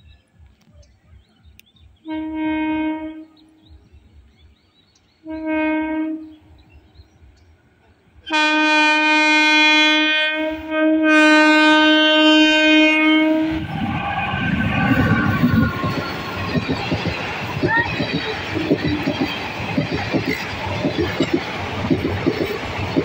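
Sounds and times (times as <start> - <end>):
locomotive horn blasts: 2.1 - 3.6, 5.2 - 6.5, 8.3 - 15.7
train rushing past: 9.2 - 23.0.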